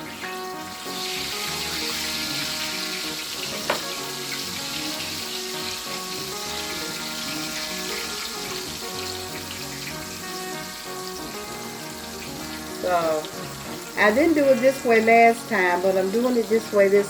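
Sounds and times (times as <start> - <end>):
background music: 0.0 - 17.0
chicken sizzling in oil: 0.0 - 17.0.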